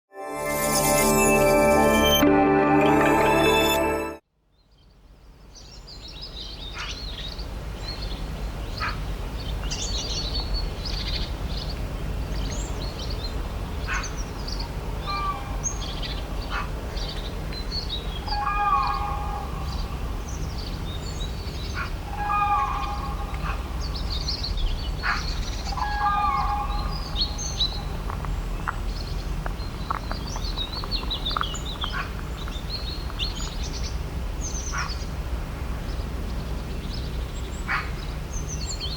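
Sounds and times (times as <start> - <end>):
small birds chirping: 4.6 - 35.2, 35.8 - 38.9
lower bird call: 17.9 - 27.9.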